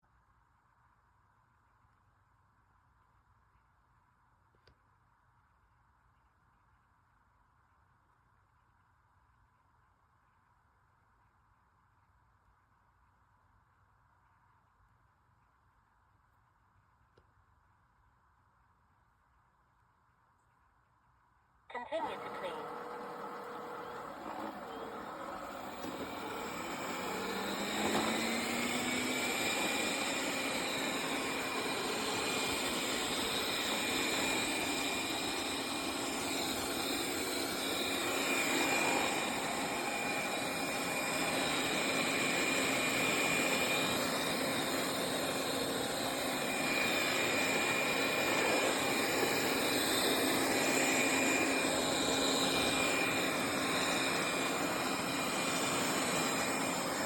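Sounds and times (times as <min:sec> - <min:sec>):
robot vacuum fan whine: 0:21.8 - 0:57.0.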